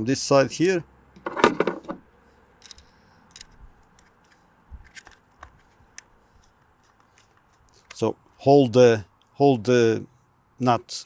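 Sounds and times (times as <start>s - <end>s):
screw and nut clicks and scrapes: 2.6s - 8.0s.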